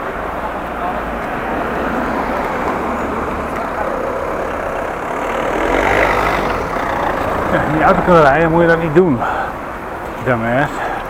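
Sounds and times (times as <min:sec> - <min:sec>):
motor vehicle passing close: 0:00.0 - 0:09.8
road traffic: 0:00.0 - 0:11.0.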